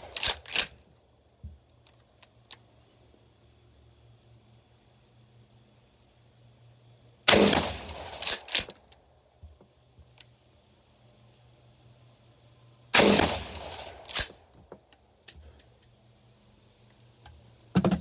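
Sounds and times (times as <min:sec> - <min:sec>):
shotgun shots: 0:07.3 - 0:08.7, 0:13.0 - 0:14.3.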